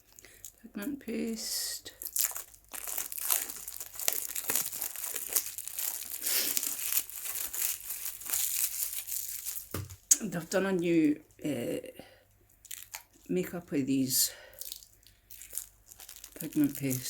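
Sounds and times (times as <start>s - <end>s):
packaging crinkling and rustling: 1.8s - 10.5s, 14.6s - 17.0s.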